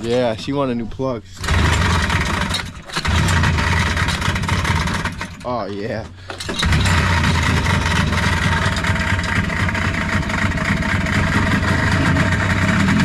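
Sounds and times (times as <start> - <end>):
snowmobile engine running: 1.4 - 5.2, 6.6 - 13.0.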